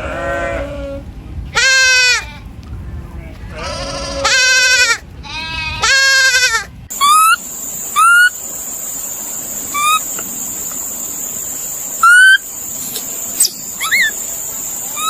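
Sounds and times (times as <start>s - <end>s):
goat bleating: 3.5s - 6.7s
steady high-pitched whine: 6.8s - 15.0s
small animal squeaking: 6.9s - 7.4s, 8.0s - 8.3s, 9.7s - 10.1s, 12.0s - 12.4s, 13.4s - 14.2s.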